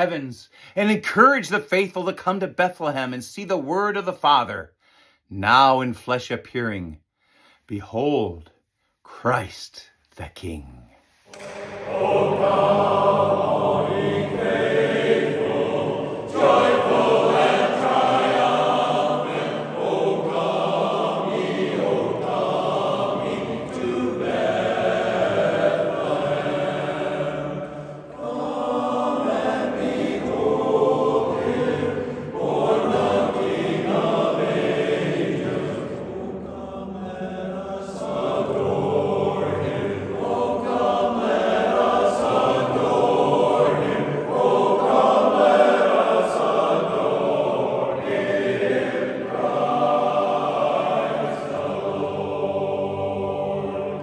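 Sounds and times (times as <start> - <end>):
chorus singing a cappella: 11.3 - 54.0.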